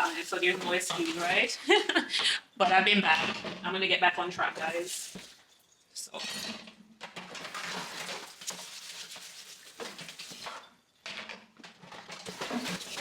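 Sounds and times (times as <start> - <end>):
dishes and utensils clattering: 6.1 - 8.4, 9.8 - 13.0.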